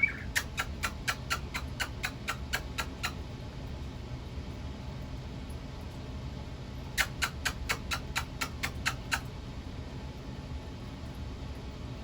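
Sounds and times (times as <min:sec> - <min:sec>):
bird making sharp clicks: 0:00.0 - 0:03.2.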